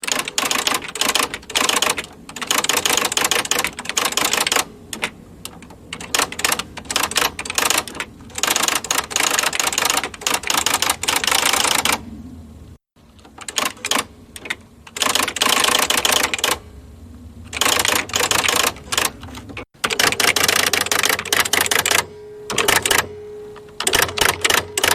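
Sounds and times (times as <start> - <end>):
electric typewriter typing: 0.0 - 12.0, 13.2 - 16.6, 17.5 - 23.1, 23.8 - 24.9.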